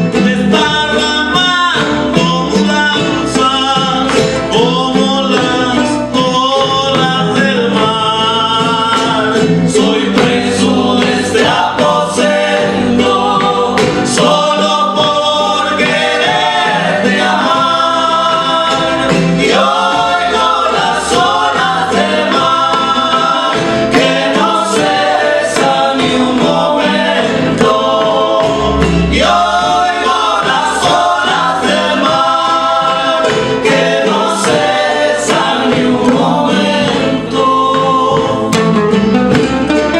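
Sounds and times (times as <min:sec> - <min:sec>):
voices singing together: 0:00.0 - 0:39.0
folk ensemble playing strummed strings: 0:00.0 - 0:39.9.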